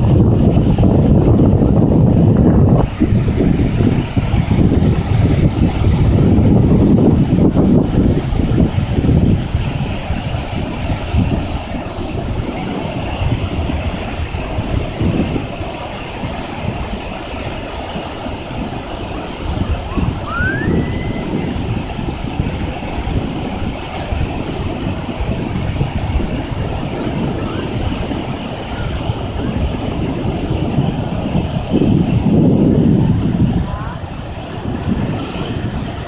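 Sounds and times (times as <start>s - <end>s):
strong wind buffeting microphone: 0.0s - 36.0s
short rising whistle: 20.2s - 21.6s.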